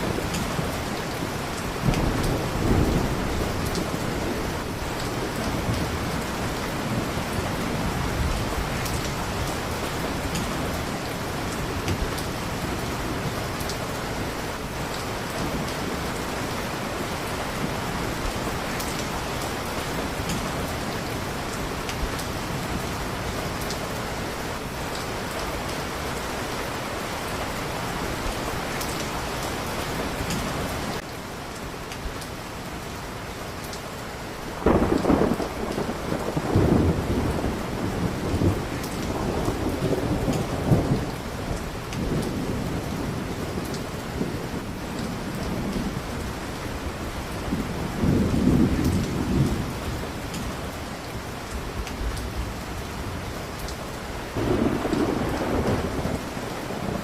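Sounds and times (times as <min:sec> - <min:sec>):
heavy rain: 0:00.0 - 0:57.0
thunder rumble: 0:01.7 - 0:13.7, 0:34.6 - 0:46.4, 0:47.2 - 0:50.8, 0:54.4 - 0:57.0.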